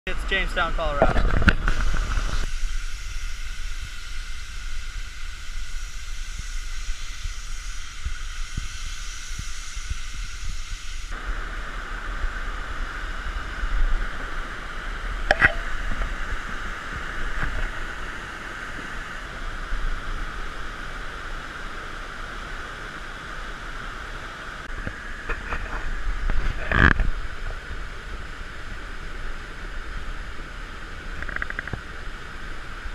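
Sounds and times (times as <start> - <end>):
floodwater rushing: 11.2 - 32.8.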